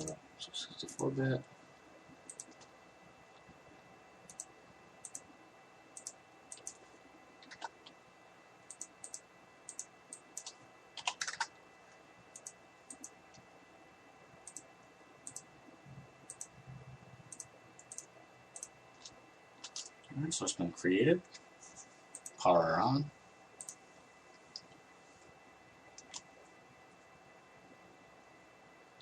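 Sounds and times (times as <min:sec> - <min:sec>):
computer mouse clicks: 0:02.3 - 0:02.7, 0:04.2 - 0:05.3, 0:06.0 - 0:08.0, 0:08.7 - 0:11.6, 0:12.3 - 0:13.4, 0:14.4 - 0:15.5, 0:16.3 - 0:16.5, 0:17.3 - 0:20.0, 0:22.1 - 0:22.4, 0:23.6 - 0:24.8, 0:25.9 - 0:26.3.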